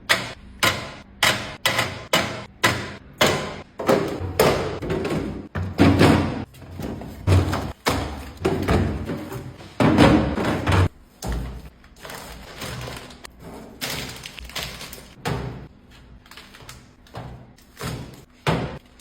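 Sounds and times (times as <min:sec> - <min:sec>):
items thumping and knocking: 0:00.0 - 0:19.0.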